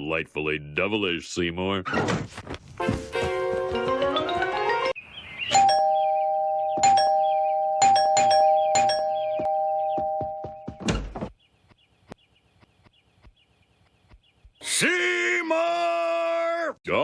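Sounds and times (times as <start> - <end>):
two-tone doorbell chimes: 5.5 - 10.8.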